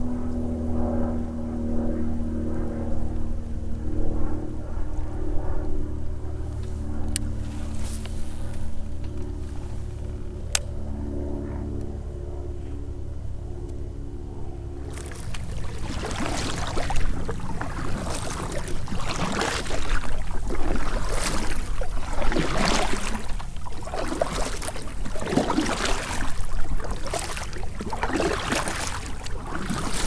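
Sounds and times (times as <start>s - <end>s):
water splashing against kayak: 14.8s - 30.0s.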